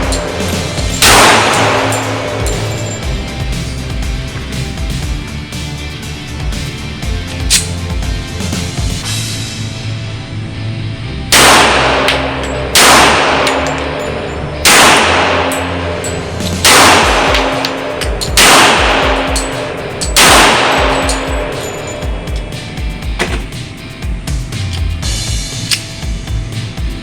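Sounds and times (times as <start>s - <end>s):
pistol shots: 0.0s - 3.0s, 11.3s - 23.5s
background music: 0.0s - 27.0s.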